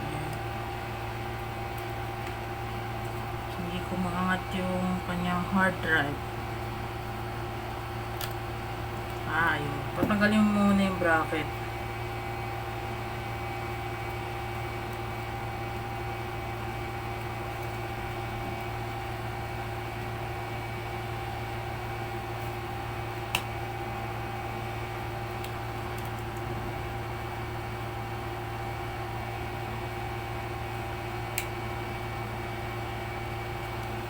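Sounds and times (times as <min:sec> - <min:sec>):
electrical hum: 0:00.0 - 0:34.0
fan whirring: 0:00.0 - 0:34.0.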